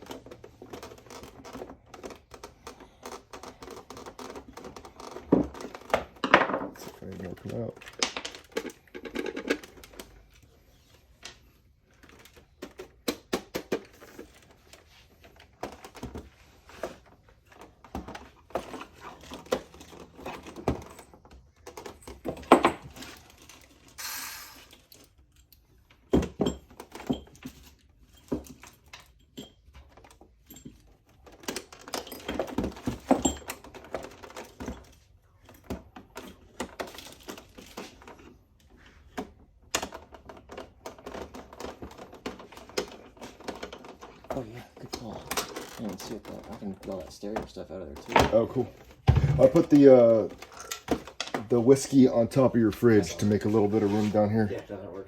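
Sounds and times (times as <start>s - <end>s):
plastic toy clicking and clattering: 0.0s - 10.4s
brief hiss: 24.0s - 24.6s.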